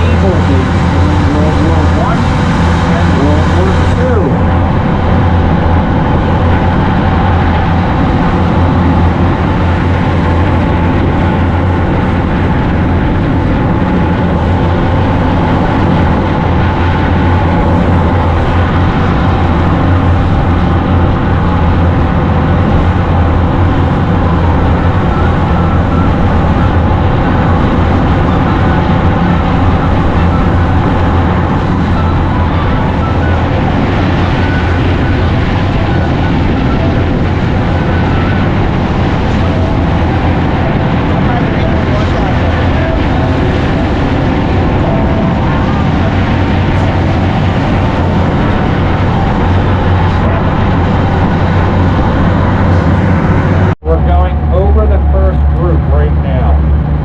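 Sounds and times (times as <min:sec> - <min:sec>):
boat engine droning: 0:00.0 - 0:57.0.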